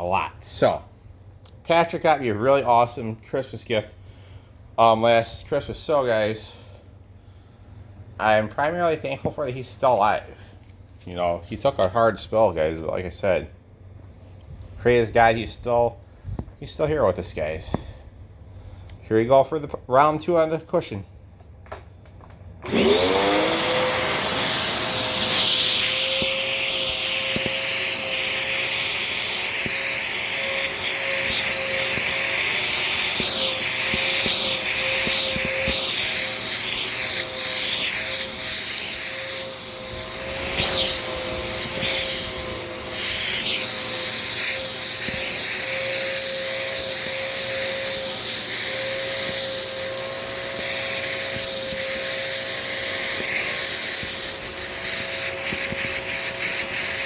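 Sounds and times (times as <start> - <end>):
vacuum cleaner whining: 22.6 - 57.0.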